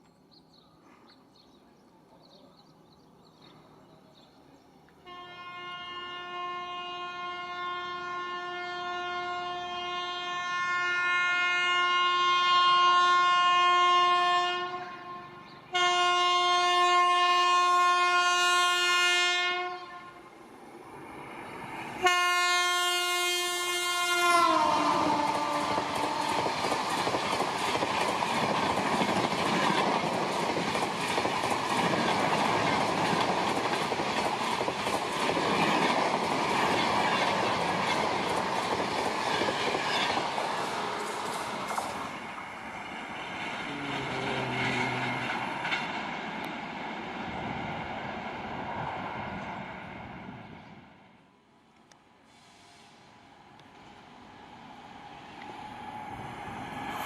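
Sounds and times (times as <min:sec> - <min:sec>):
train horn blasts: 0:05.0 - 0:20.3, 0:22.0 - 0:26.5, 0:43.6 - 0:45.5
train wheels rattling over rails: 0:24.2 - 0:49.0.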